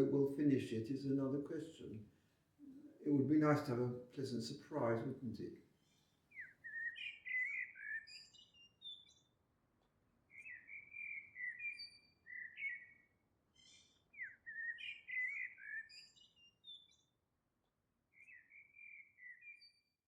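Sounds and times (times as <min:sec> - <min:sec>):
songbird warbling: 0:05.8 - 0:09.2, 0:10.3 - 0:16.2.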